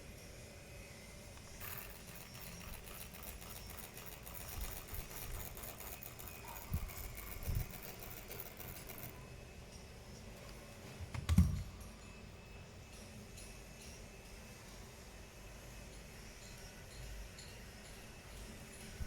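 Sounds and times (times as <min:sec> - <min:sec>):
laptop fan ticking rattle: 0:01.4 - 0:09.9.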